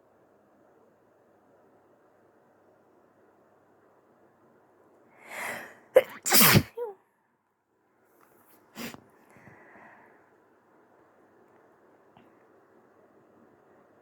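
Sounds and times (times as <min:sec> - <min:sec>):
woman breathing in: 0:05.2 - 0:05.8, 0:09.3 - 0:10.2
woman sneezing: 0:06.0 - 0:07.0.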